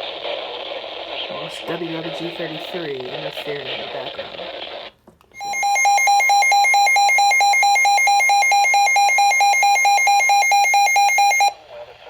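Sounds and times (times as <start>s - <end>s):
two-pitch electronic alert tone: 5.4s - 11.5s.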